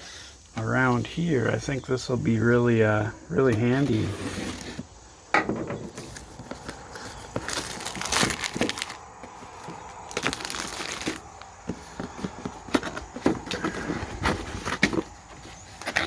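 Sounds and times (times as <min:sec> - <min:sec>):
packaging crinkling and rustling: 0:06.0 - 0:16.0
packaging tearing: 0:07.0 - 0:11.4, 0:15.8 - 0:16.0.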